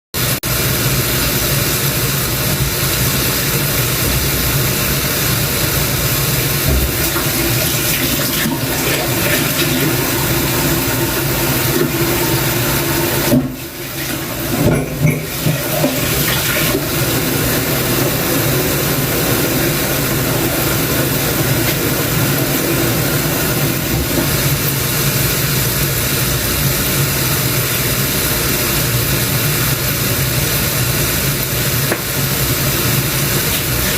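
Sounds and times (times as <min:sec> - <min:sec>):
water rushing from tap: 0:00.2 - 0:33.9.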